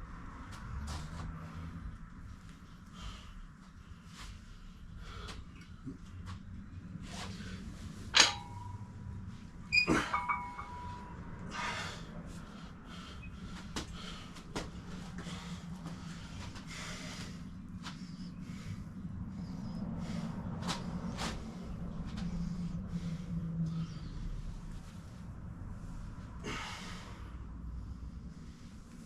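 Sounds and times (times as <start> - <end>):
metal rattle: 8.0 - 11.2
metal gym weights clanking: 8.1 - 9.0, 9.7 - 11.2.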